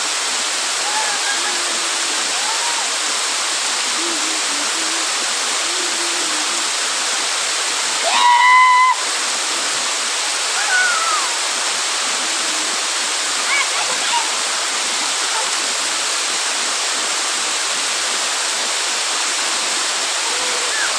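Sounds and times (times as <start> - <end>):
waterfall rushing: 0.0 - 20.9.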